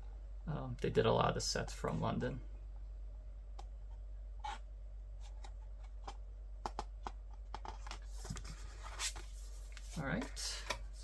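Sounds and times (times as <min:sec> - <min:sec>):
low steady hum: 0:00.0 - 0:11.0
paper pages rustling: 0:07.6 - 0:11.0.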